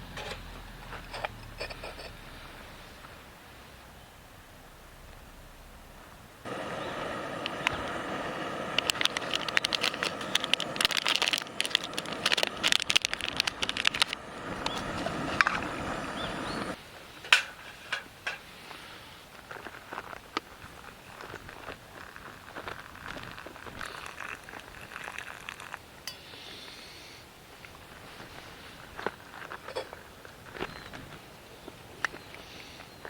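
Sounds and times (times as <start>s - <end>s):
campfire crackling and popping: 6.4s - 16.8s, 19.4s - 26.2s.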